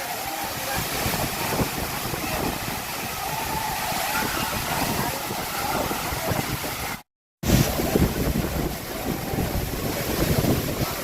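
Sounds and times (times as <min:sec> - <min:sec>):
faint voices: 0:00.0 - 0:07.0
waterfall rushing: 0:00.0 - 0:11.0.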